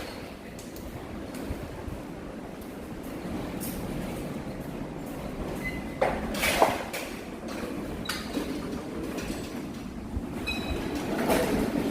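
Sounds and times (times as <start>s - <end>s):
strong wind rumbling: 0.0s - 5.6s, 7.3s - 11.9s.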